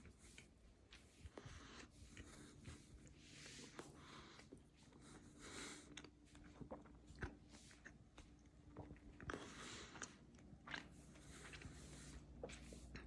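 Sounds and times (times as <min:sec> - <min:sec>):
person chewing: 0:00.0 - 0:13.0.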